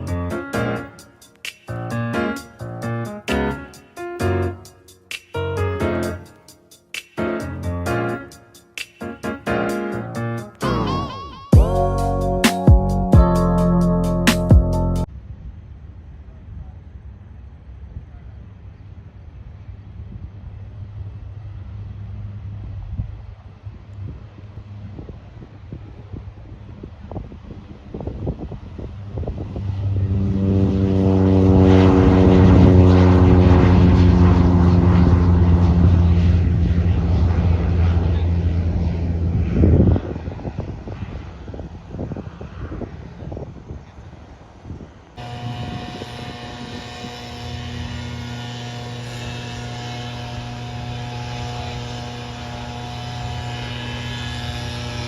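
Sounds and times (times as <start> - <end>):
high turbine whine: 0.0 - 15.1, 26.1 - 55.0
propeller aircraft engine drone: 0.0 - 55.0.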